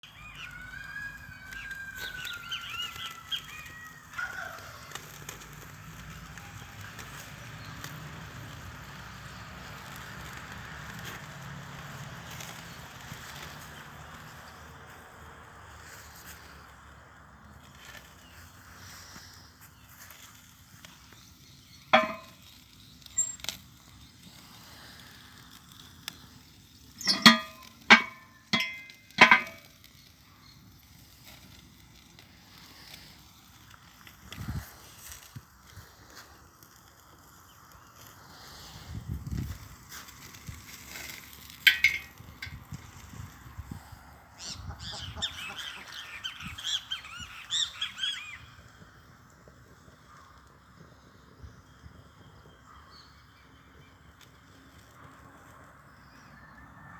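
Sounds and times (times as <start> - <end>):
small birds chirping: 0.0 - 8.2, 17.6 - 31.3, 44.4 - 55.1
meat sizzling over fire: 0.0 - 56.9
rooster crowing: 0.3 - 5.0
metal clinks: 22.0 - 22.4, 27.0 - 29.7, 41.7 - 42.6.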